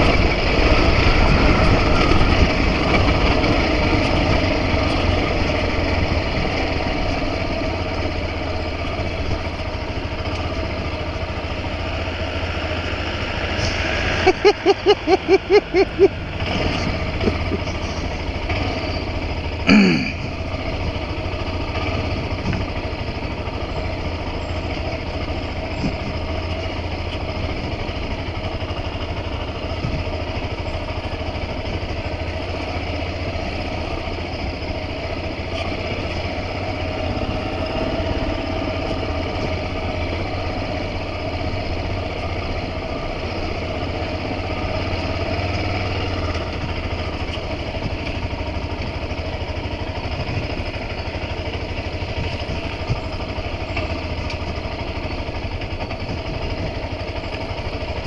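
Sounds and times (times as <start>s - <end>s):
motorcycle engine running: 0.0s - 58.0s.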